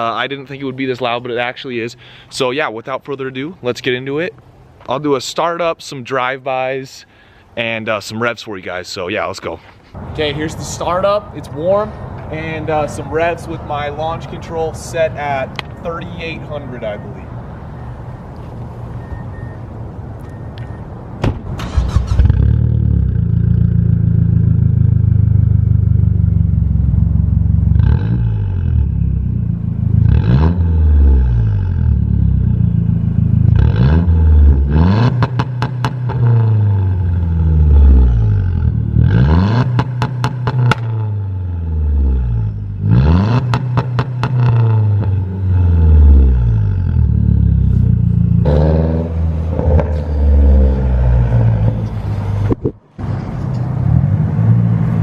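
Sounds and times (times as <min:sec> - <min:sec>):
car engine idling and revving: 0:17.1 - 0:55.0
exhaust pops and crackles: 0:34.6 - 0:36.8, 0:38.6 - 0:41.2, 0:42.8 - 0:45.2.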